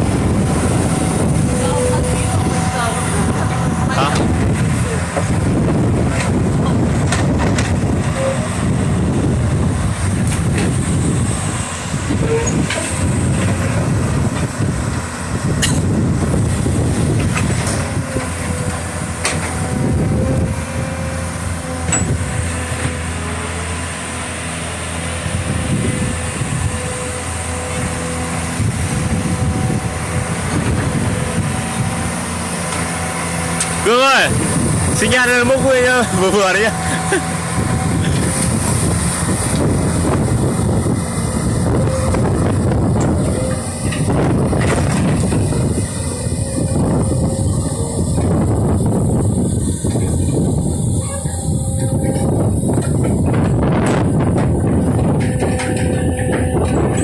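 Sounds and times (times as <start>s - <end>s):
excavator diesel engine under load: 0.0s - 57.0s
steady thin whine: 0.0s - 57.0s
metallic knocks: 51.0s - 57.0s.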